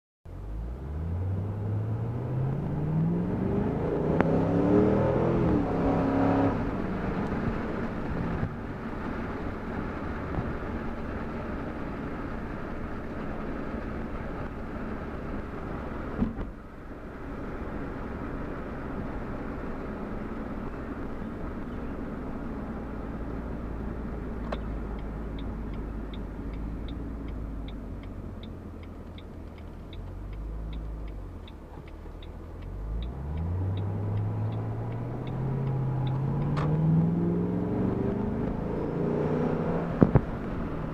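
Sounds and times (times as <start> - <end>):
car engine accelerating: 0.3 - 40.9
thump: 16.2 - 16.6, 40.0 - 40.3
turn signal ticking: 18.1 - 38.9.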